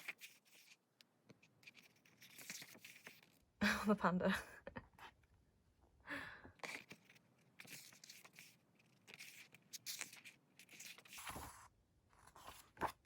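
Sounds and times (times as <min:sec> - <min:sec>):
glossy paper pages rustling: 0:00.0 - 0:03.6, 0:06.6 - 0:13.0.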